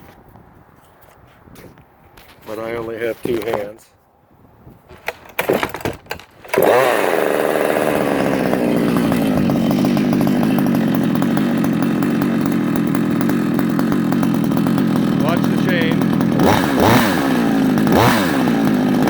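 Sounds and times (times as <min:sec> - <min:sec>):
chainsaw engine starting: 0:05.0 - 0:19.0.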